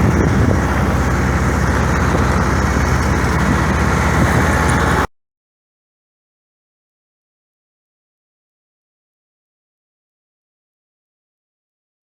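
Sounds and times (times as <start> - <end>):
engine running steadily: 0.0 - 5.1.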